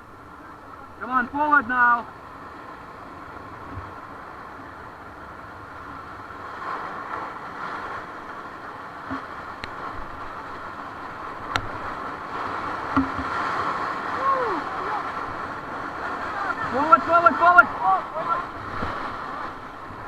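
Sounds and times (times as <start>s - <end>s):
river water rushing and splashing: 0.0s - 20.0s
sharp knocks: 12.9s - 13.3s.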